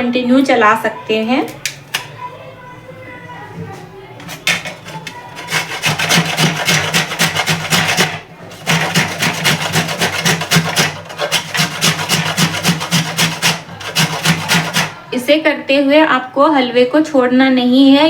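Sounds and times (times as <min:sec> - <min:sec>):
coconut grated by hand: 0:04.2 - 0:15.1.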